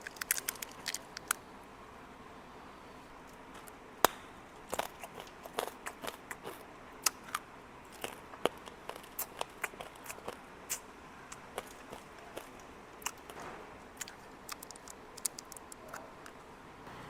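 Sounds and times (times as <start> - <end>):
candy crackling and snapping: 0.0 - 1.4, 4.6 - 13.4, 14.0 - 16.0.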